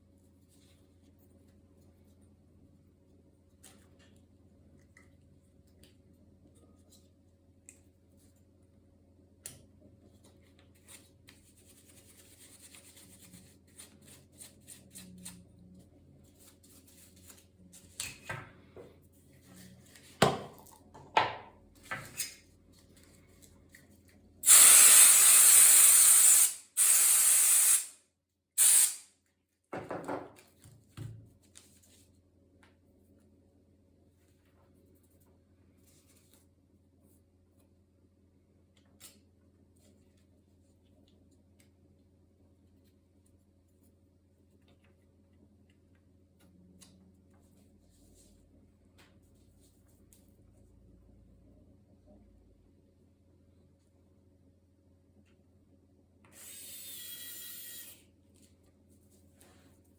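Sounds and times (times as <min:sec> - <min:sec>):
compressed air hissing: 0:24.4 - 0:28.0, 0:28.6 - 0:29.0.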